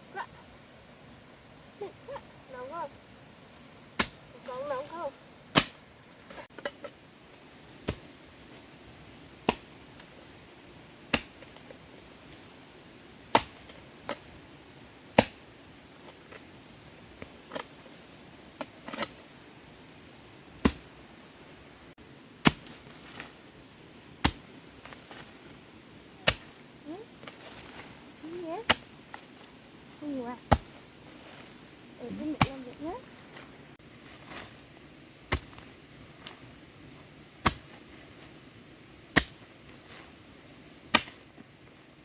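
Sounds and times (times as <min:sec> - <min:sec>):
blade chopping wood: 0:05.5 - 0:05.8, 0:11.1 - 0:11.5, 0:15.2 - 0:15.4, 0:22.4 - 0:23.3, 0:39.1 - 0:39.4, 0:40.9 - 0:41.2.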